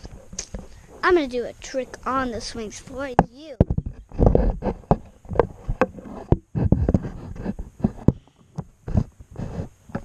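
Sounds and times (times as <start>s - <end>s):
irregular thumps and knocks: 2.9s - 10.0s.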